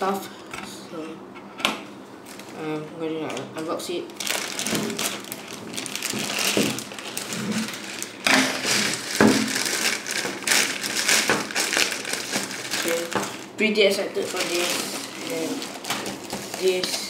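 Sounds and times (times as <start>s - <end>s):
package being torn open: 4.2s - 13.4s.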